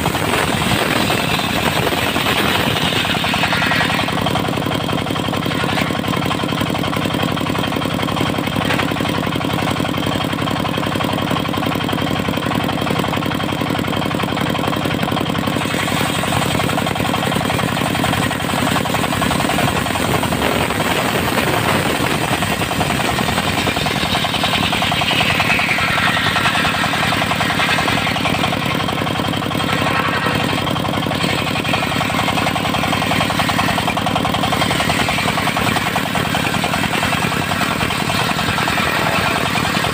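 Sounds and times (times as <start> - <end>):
high-pitched saw noise: 0.0 - 4.4, 17.5 - 39.9
diesel engine running: 0.0 - 39.9.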